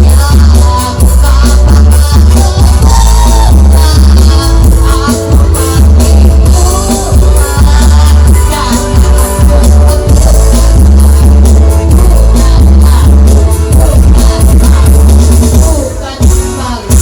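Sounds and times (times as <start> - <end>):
loud music with heavy bass: 0.0 - 17.0.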